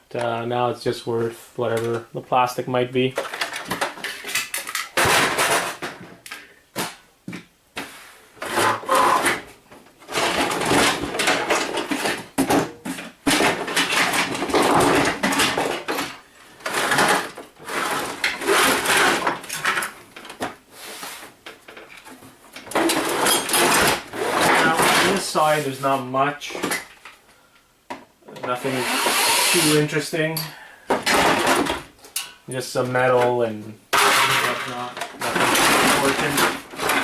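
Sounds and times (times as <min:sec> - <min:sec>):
printer parts scraping and clattering: 0:03.2 - 0:06.1, 0:08.4 - 0:25.4, 0:30.9 - 0:32.3, 0:33.9 - 0:37.0.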